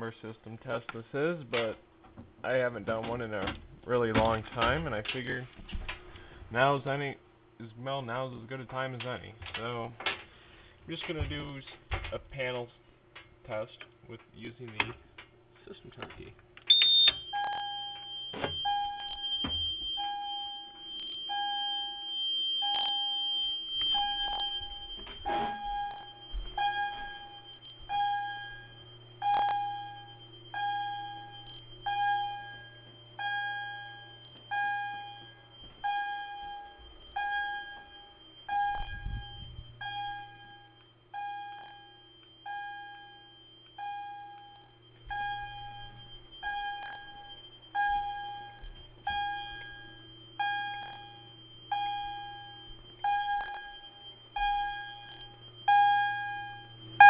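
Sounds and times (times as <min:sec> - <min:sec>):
fire alarm pulsed tone: 0:02.4 - 0:07.0, 0:13.2 - 0:57.0
steady high tone: 0:42.6 - 0:57.0.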